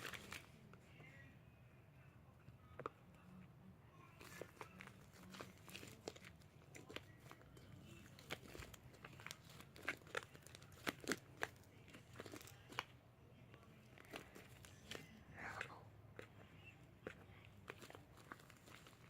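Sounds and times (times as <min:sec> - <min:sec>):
slime squishing and crackling: 0:04.1 - 0:12.9, 0:13.6 - 0:19.0.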